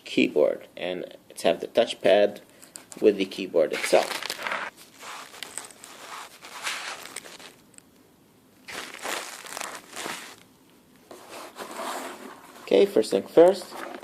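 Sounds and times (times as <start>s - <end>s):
packaging crinkling and rustling: 3.7s - 8.0s, 8.7s - 10.4s, 13.5s - 14.0s.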